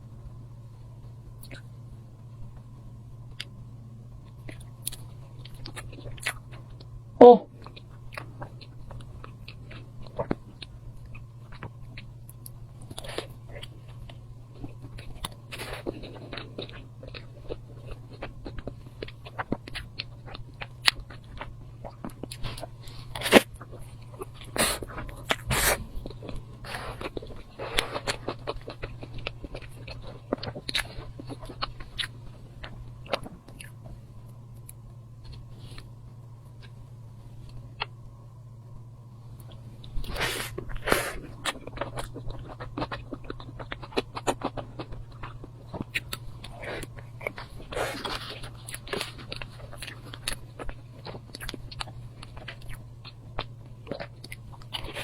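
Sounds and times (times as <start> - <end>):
steady low hum: 0.0 - 55.0
person biting and chewing: 7.6 - 33.8, 39.4 - 55.0.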